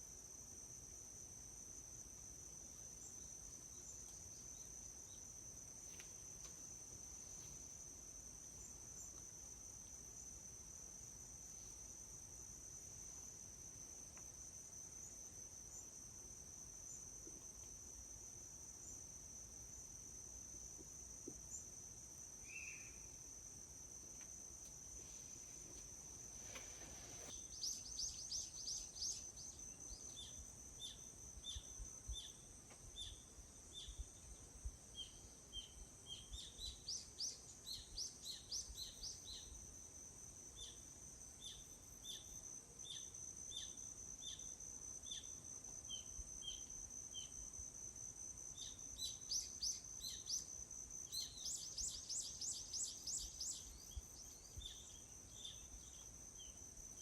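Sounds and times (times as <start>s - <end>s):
insects trilling: 1.8s - 57.0s
bird chirping: 26.5s - 32.4s, 48.6s - 50.5s, 51.1s - 57.0s.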